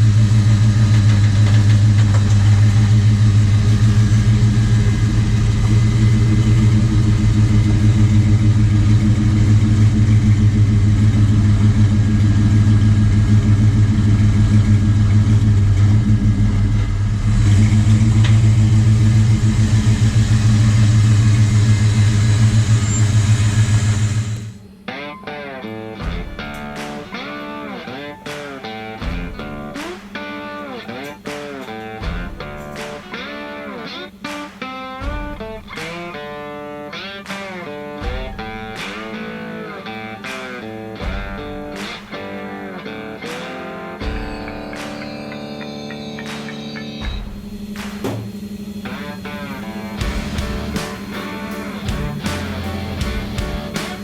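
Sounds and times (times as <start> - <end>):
pressure washer engine running: 0.0 - 24.8, 29.0 - 40.1, 47.0 - 54.0.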